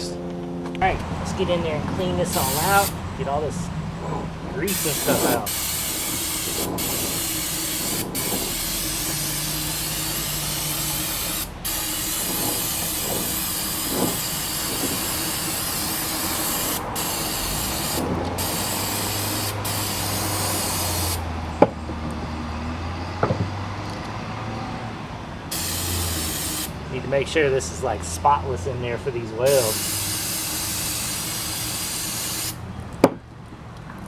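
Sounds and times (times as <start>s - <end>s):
aerosol can spraying: 2.3s - 3.0s, 4.7s - 21.2s, 25.5s - 26.7s, 29.5s - 32.6s.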